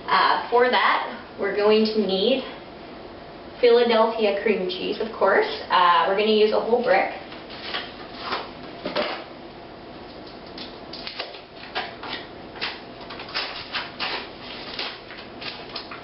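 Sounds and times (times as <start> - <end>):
foil wrapper crinkling: 10.2 - 16.0.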